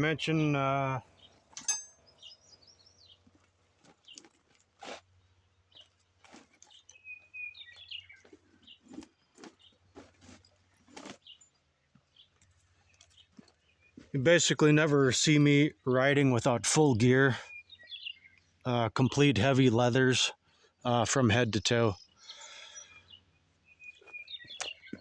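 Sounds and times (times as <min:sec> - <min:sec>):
faint bird chirps: 0:06.6 - 0:09.9, 0:17.0 - 0:19.4, 0:20.3 - 0:25.0.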